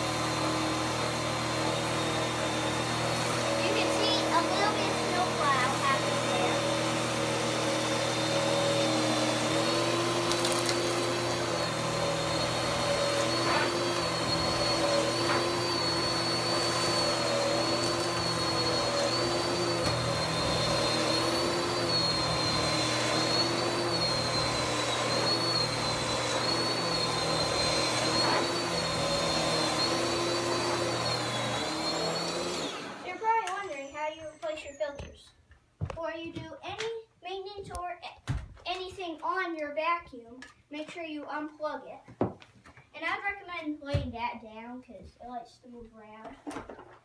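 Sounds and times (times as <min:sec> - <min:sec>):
vacuum cleaner on carpet: 0:00.0 - 0:35.0.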